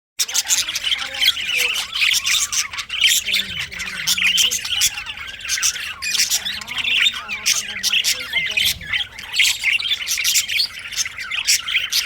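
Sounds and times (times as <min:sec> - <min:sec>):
budgerigars chirping and warbling: 0:00.2 - 0:12.0.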